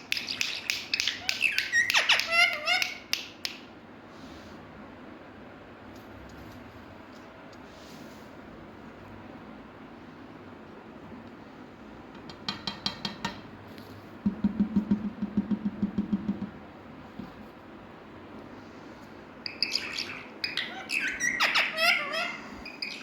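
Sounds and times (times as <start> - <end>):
parakeet chattering: 0.1 - 3.1, 19.4 - 23.0
parakeet shrill squawks: 0.2 - 3.1, 19.4 - 23.0.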